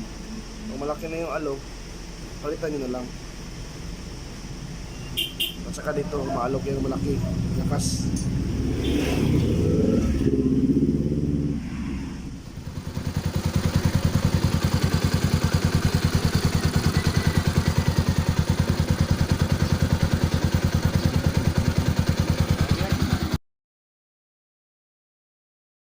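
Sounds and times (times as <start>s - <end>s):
motorcycle engine idling: 0.0s - 11.6s, 12.2s - 23.4s.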